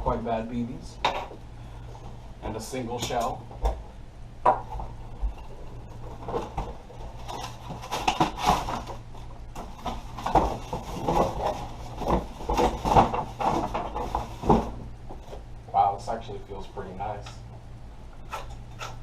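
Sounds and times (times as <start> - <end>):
low steady hum: 0.0 - 19.0
packaging rustling: 9.6 - 14.8.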